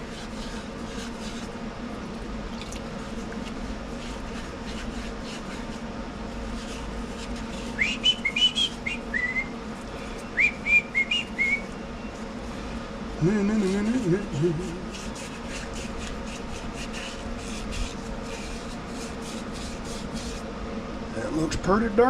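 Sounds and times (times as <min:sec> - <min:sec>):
steady low hum: 0:00.0 - 0:22.0
person whistling a tune: 0:07.8 - 0:09.5, 0:10.4 - 0:11.7.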